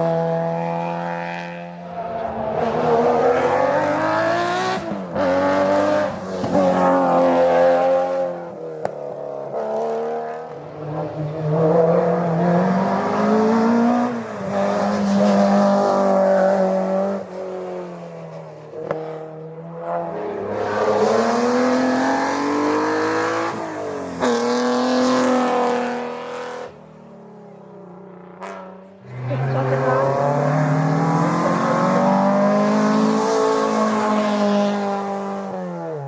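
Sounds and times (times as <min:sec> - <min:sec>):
racing car engine accelerating: 0:00.0 - 0:08.8, 0:09.5 - 0:18.0, 0:19.8 - 0:26.8, 0:28.3 - 0:36.0.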